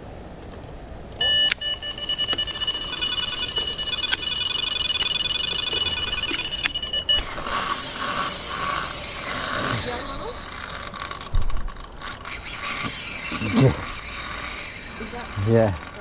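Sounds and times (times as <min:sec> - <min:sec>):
bite alarm beeping: 0:01.2 - 0:16.0.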